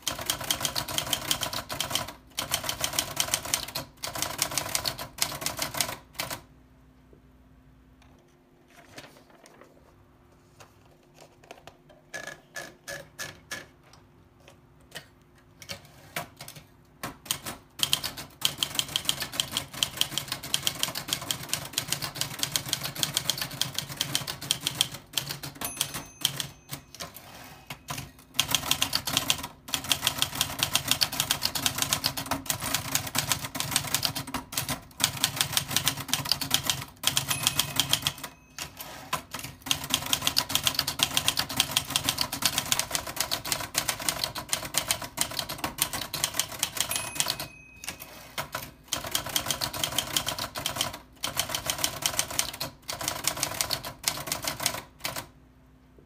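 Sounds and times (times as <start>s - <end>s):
typewriter key strikes: 16.4s - 32.8s, 35.0s - 55.2s.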